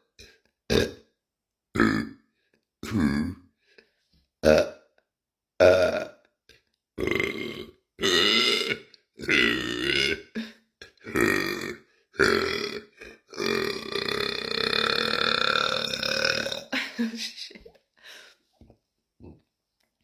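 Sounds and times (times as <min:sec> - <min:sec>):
woman burping: 0:00.7 - 0:01.0, 0:05.6 - 0:06.2, 0:07.0 - 0:17.4.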